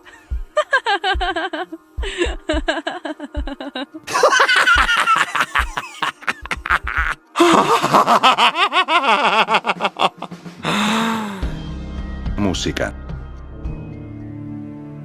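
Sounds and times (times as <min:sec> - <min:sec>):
laughter sound effects: 0:00.6 - 0:10.4.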